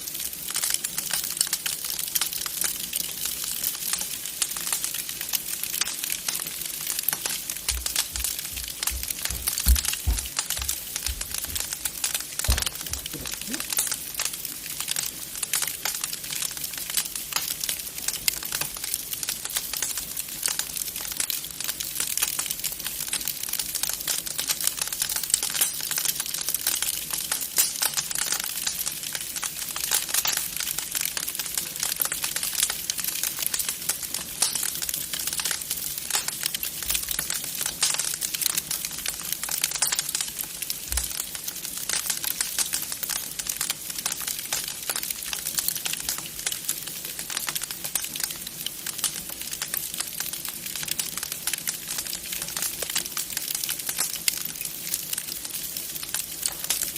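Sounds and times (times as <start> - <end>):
wood fire crackling: 0.0 - 56.9.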